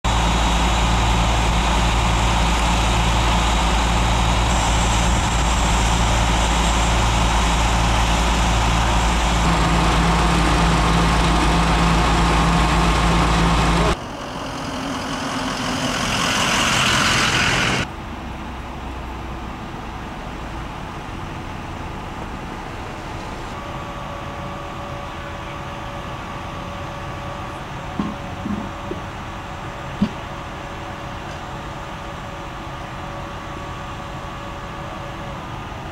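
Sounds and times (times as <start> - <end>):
rushing noise: 0.0 - 17.9
fire truck engine idling: 0.0 - 35.9.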